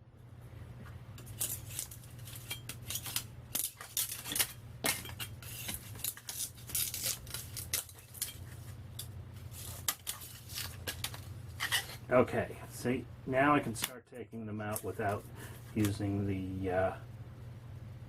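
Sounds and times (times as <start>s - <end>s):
metal sheets clinking and scraping: 1.2s - 8.6s.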